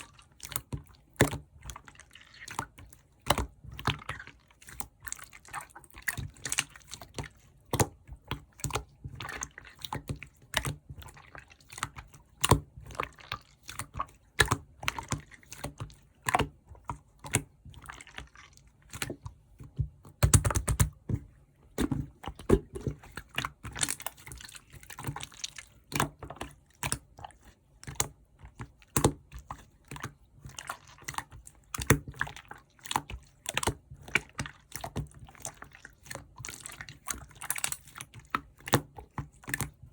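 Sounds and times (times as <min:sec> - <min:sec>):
slime squelching and popping: 0:00.0 - 0:39.9.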